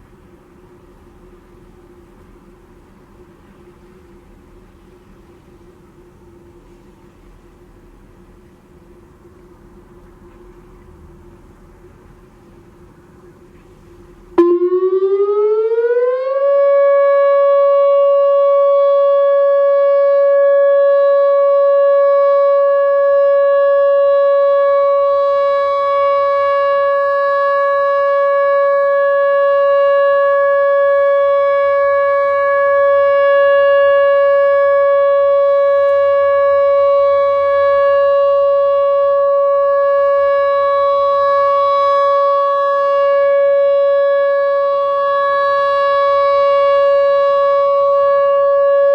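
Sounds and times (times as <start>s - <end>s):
electronic warning siren: 14.4s - 48.9s.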